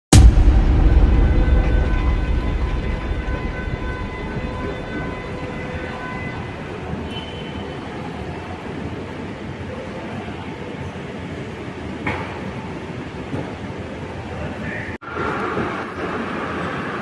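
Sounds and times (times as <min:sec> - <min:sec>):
metro train rumbling: 0:00.1 - 0:17.0
faint high whining tones: 0:00.3 - 0:11.0.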